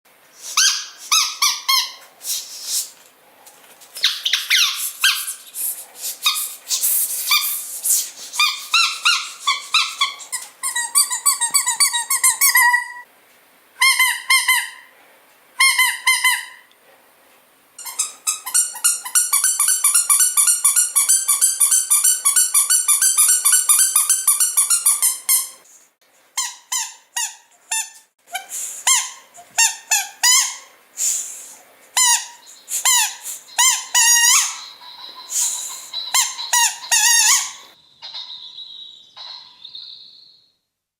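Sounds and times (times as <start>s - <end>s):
squeaky dog toy squeaking: 0.6s - 2.0s, 4.0s - 5.4s, 8.4s - 13.0s, 13.8s - 14.9s, 15.6s - 16.6s, 17.8s - 25.6s, 26.4s - 30.7s, 32.0s - 38.2s.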